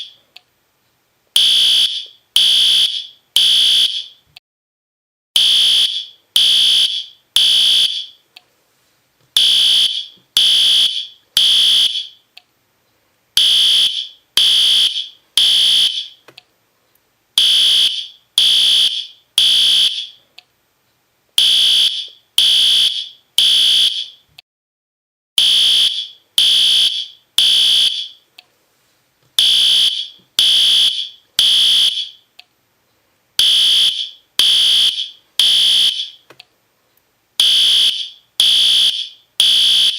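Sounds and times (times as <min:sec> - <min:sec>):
fire alarm horn blasts: 0:01.4 - 0:04.2, 0:05.4 - 0:08.2, 0:09.4 - 0:12.2, 0:13.4 - 0:16.2, 0:17.4 - 0:20.2, 0:21.4 - 0:24.2, 0:25.4 - 0:28.2, 0:29.4 - 0:32.2, 0:33.4 - 0:36.2, 0:37.4 - 0:39.9.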